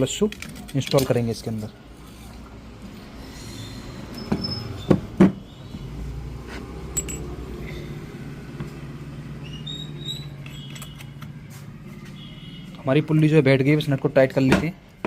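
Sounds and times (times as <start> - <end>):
metal parts and tools clinking: 0.0 - 1.6, 6.8 - 7.4, 9.7 - 11.5.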